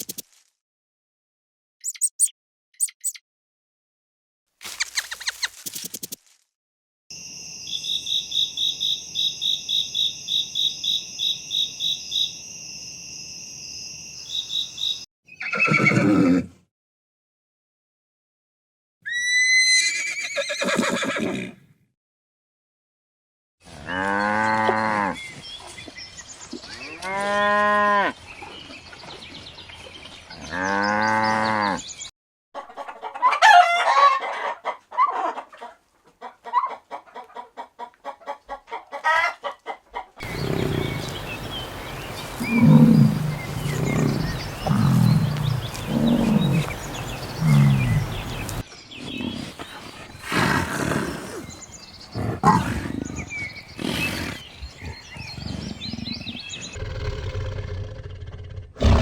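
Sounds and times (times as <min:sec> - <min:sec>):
low animal calls: 0:42.4 - 0:59.0.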